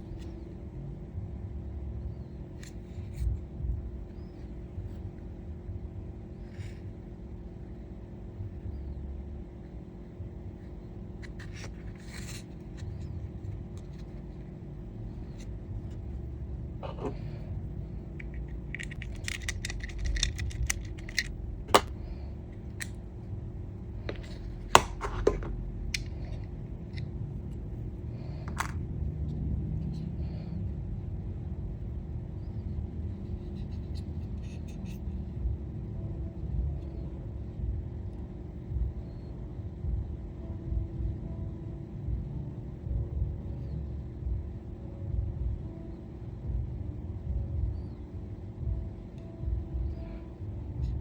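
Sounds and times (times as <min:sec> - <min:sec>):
low rumble: 0:10.2 - 0:51.0
packaging clicks scrapes and rattles: 0:18.2 - 0:21.9.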